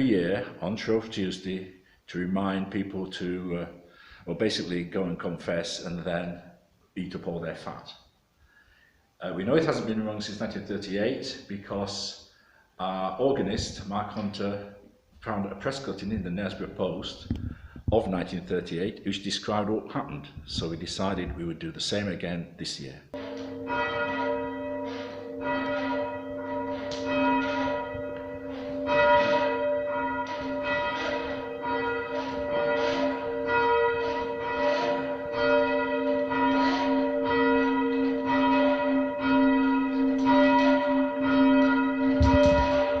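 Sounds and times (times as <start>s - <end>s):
church bell ringing: 23.2s - 43.0s.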